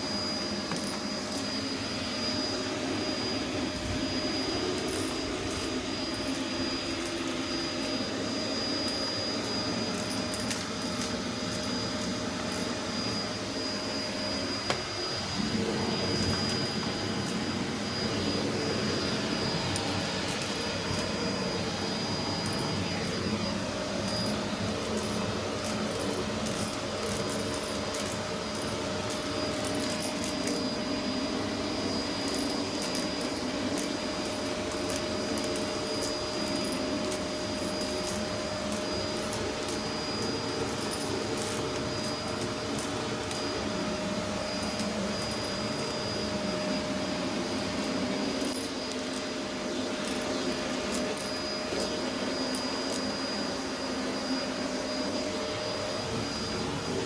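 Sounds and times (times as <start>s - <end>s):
vacuum cleaner running: 0.0s - 57.0s.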